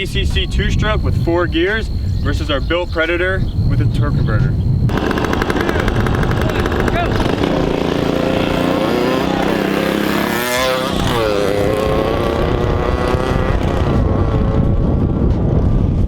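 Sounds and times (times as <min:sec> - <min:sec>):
small bike engines racing: 0:04.9 - 0:14.9.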